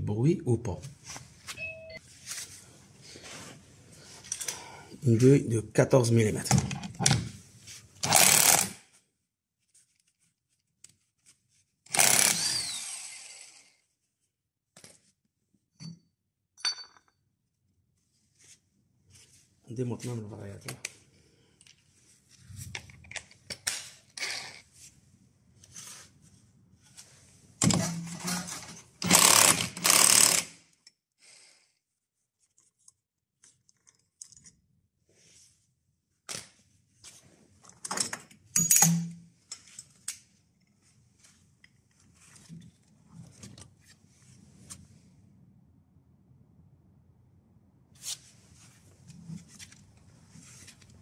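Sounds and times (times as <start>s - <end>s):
metal tools clinking and knocking: 15.8s - 17.2s, 37.6s - 40.0s.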